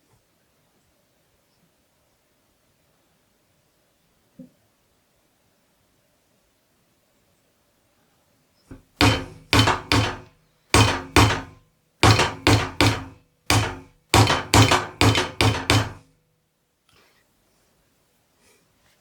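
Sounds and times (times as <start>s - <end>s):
hammer blows ringing: 8.7s - 16.1s.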